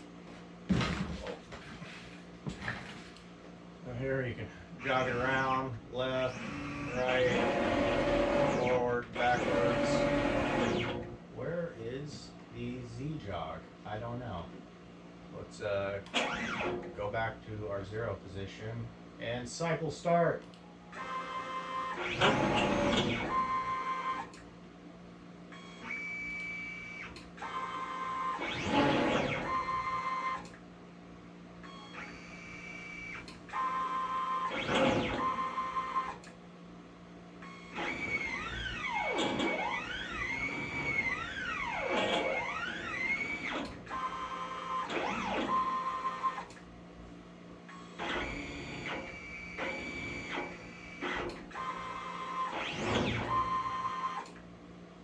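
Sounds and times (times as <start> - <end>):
steady low hum: 0.0 - 21.1
stepper motors whining: 4.8 - 11.1, 20.9 - 24.4, 25.5 - 30.6, 31.7 - 36.3, 37.4 - 46.6, 47.7 - 54.4.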